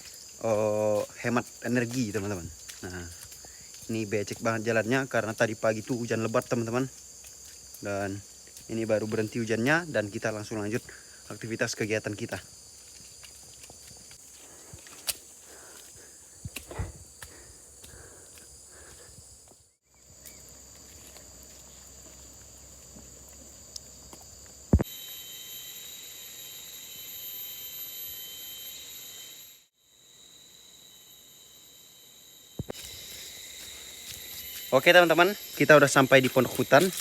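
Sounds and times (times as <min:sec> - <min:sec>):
footsteps on mud: 0:00.0 - 0:24.8, 0:32.7 - 0:37.0
insects whining: 0:00.0 - 0:37.0.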